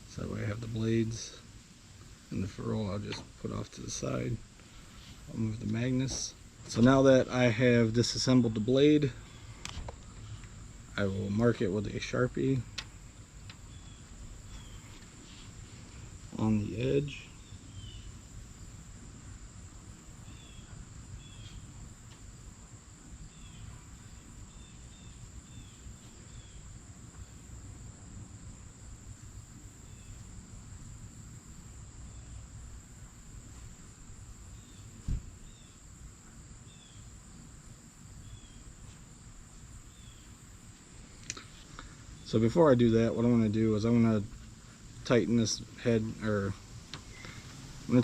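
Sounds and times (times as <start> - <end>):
insect trill: 5.2 - 48.0
soft thump: 35.0 - 35.3.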